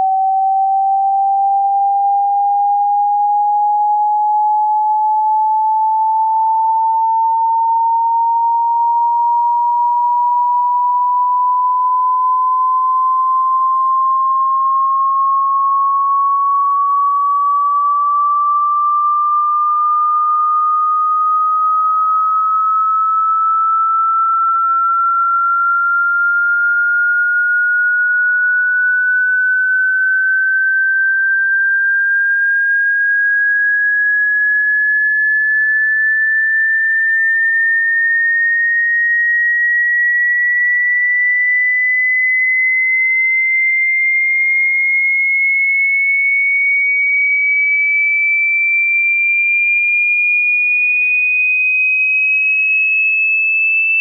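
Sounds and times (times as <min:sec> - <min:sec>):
sine tone sweeping upward: 0:00.0 - 0:54.0.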